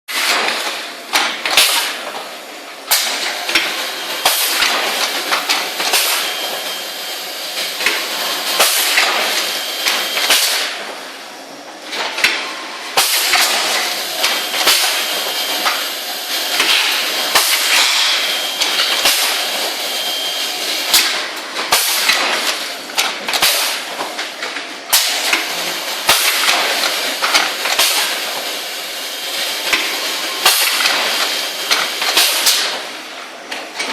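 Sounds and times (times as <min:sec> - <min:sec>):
machine hiss: 0:02.9 - 0:10.7, 0:13.0 - 0:22.6.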